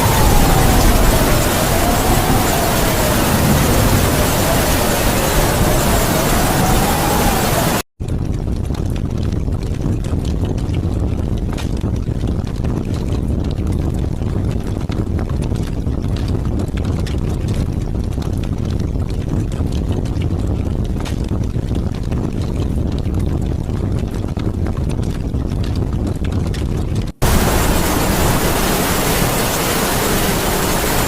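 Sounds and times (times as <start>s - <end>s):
heavy rain: 0.0s - 7.9s, 27.2s - 31.0s
strong wind: 0.0s - 31.0s.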